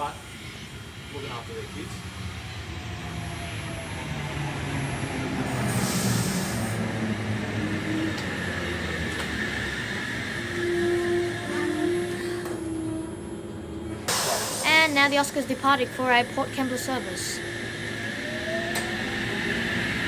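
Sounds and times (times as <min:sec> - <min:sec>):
electric train motors whining: 0:00.0 - 0:20.0
air hiss: 0:05.5 - 0:06.8, 0:14.1 - 0:15.2.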